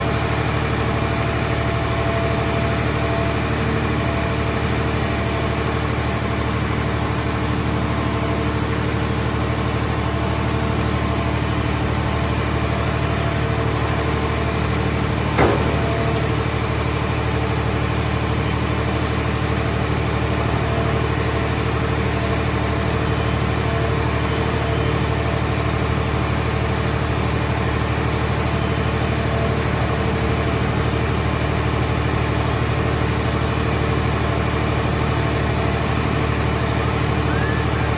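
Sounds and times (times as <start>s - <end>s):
baler engine running: 0.0s - 37.9s
sharp knock: 15.4s - 16.2s.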